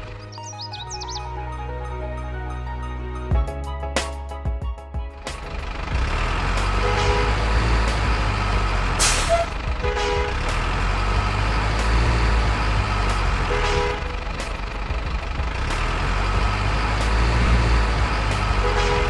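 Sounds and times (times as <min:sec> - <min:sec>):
truck engine rumbling: 0:00.0 - 0:19.0
air brake hiss: 0:09.0 - 0:09.5.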